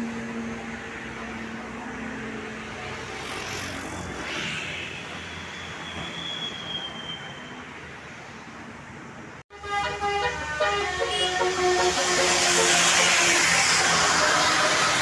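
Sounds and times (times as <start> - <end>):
vehicles passing close by: 0.0 - 15.0.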